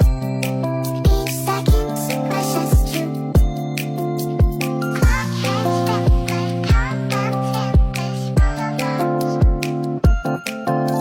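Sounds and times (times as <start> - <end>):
background music with steady beat: 0.0 - 11.0.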